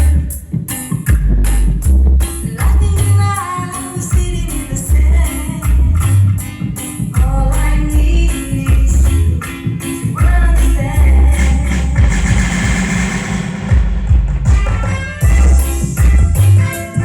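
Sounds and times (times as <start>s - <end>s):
loud music with heavy bass: 0.0s - 17.0s
person singing: 2.4s - 6.2s, 7.1s - 12.4s.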